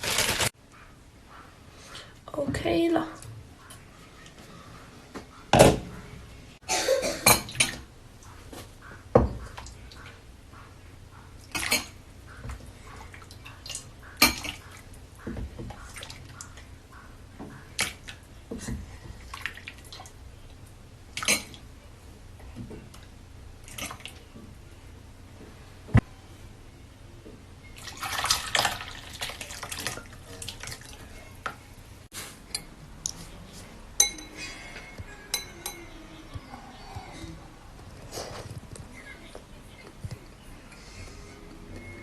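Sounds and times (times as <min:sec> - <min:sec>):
pots and utensils clattering: 0:34.0 - 0:36.0.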